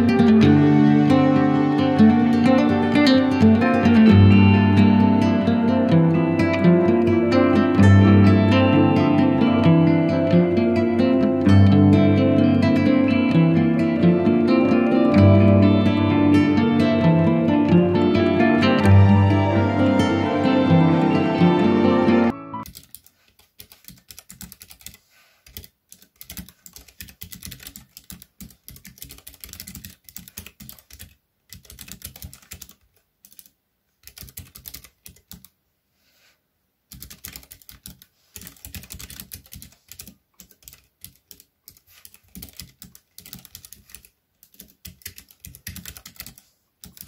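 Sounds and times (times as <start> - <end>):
music: 0.0 - 22.6.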